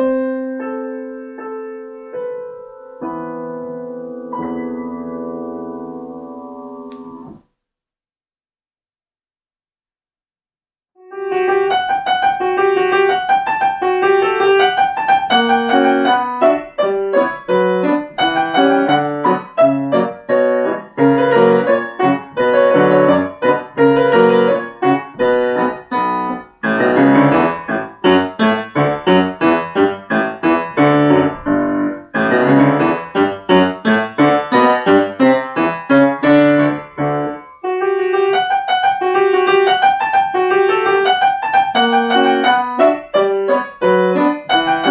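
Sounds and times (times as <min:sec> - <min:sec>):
lively solo piano piece: 0:00.0 - 0:07.4, 0:11.0 - 0:44.9.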